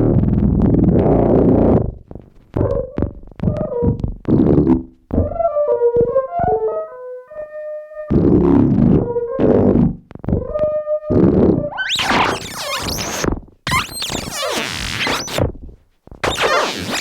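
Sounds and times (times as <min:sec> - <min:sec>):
distorted synthesizer bursts: 0:11.8 - 0:15.4, 0:16.2 - 0:17.0.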